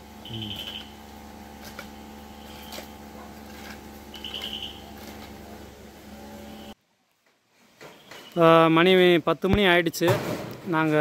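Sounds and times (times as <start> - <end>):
electrical machine hum: 0.0 - 6.8.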